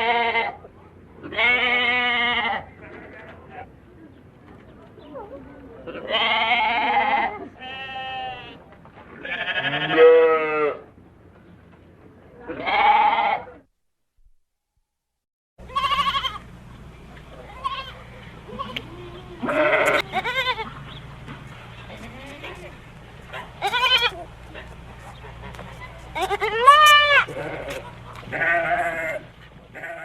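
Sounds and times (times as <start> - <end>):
goats bleating: 0.0 - 0.6, 1.2 - 3.7, 5.9 - 8.6, 9.2 - 10.8, 12.5 - 13.6, 15.6 - 16.5, 17.4 - 20.9, 21.8 - 30.0.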